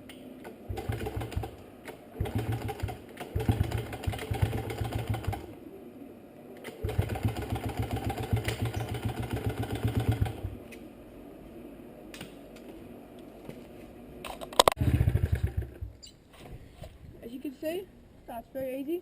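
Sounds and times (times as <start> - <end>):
small motorcycle engine running roughly: 14.8 - 15.8.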